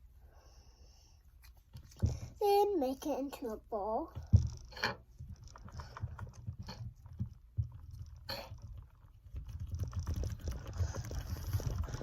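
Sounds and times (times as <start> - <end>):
tapping and small clicks: 4.1 - 12.0.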